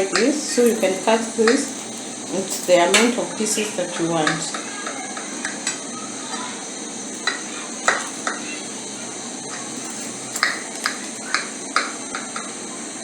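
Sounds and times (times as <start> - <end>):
utensil tapping a frying pan: 0.0 - 0.5, 2.8 - 6.4, 7.2 - 8.6, 10.4 - 12.7
steady background hiss: 0.0 - 13.0.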